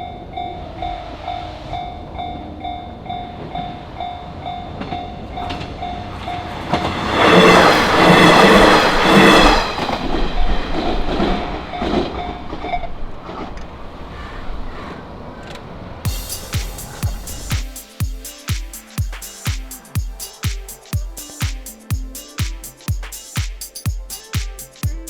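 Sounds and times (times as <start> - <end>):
wheels clacking over rail joints: 0.0 - 14.1
diesel train passing: 0.0 - 25.0
music: 16.1 - 25.0.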